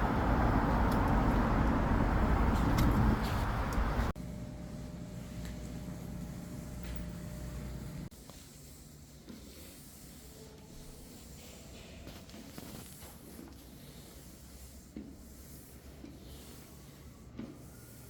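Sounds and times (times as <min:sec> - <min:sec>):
mop rubbing across floor: 0:05.2 - 0:18.0.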